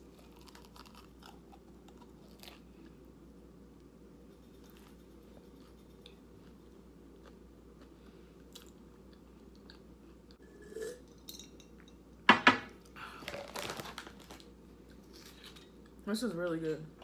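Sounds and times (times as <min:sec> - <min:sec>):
chewing and crunching chips: 0:00.0 - 0:03.2, 0:04.3 - 0:10.4, 0:12.8 - 0:16.0.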